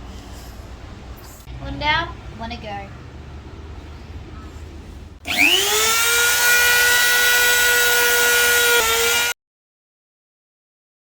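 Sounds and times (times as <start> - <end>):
electric power tool whining: 5.2 - 9.4.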